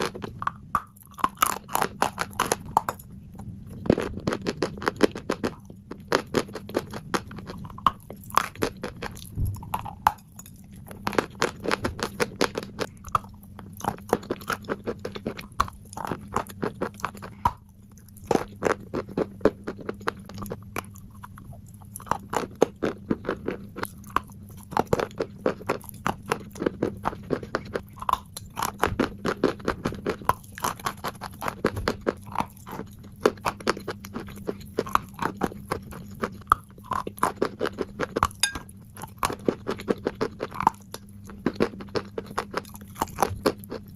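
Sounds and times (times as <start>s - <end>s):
chalk being chewed: 3.9s - 43.9s.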